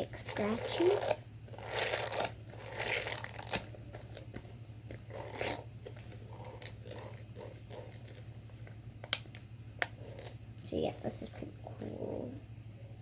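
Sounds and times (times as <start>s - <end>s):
scratchy rubbing on fidget toy: 0.2s - 4.2s, 5.0s - 8.7s, 9.9s - 10.4s.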